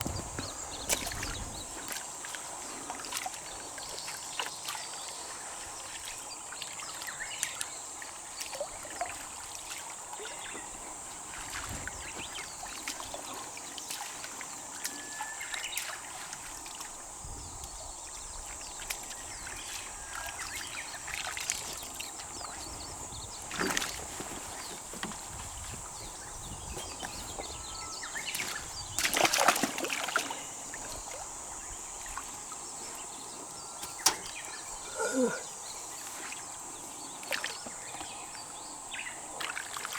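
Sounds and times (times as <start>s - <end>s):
water sloshing and splashing: 0.0s - 39.9s.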